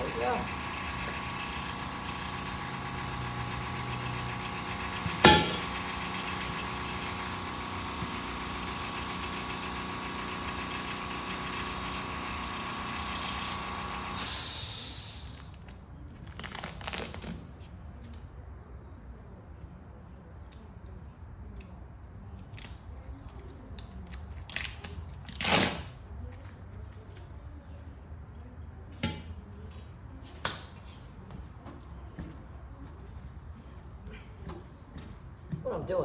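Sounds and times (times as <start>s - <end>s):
air compressor humming: 0.0s - 15.7s
hiss of released air: 14.1s - 15.7s.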